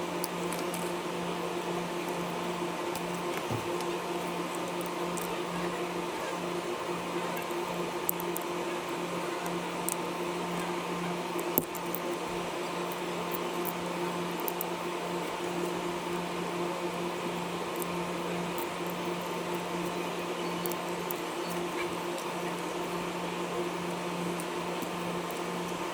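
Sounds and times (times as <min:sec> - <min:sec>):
machine hum: 0:00.0 - 0:25.9
small sharp clicks: 0:11.4 - 0:12.1, 0:19.8 - 0:22.7.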